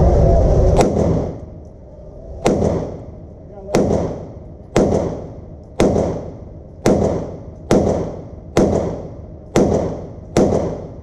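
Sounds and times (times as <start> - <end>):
pistol shots: 0.8 - 1.4, 2.4 - 3.1, 3.7 - 11.0.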